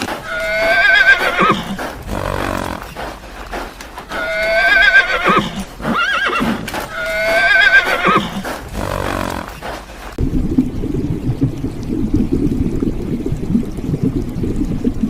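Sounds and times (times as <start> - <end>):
horse whinnying: 0.2 - 2.8, 4.1 - 9.5.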